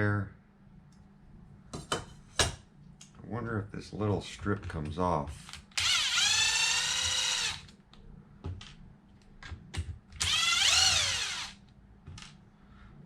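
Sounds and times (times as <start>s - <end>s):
electric screwdriver motor whining: 5.8s - 7.7s, 10.2s - 11.6s.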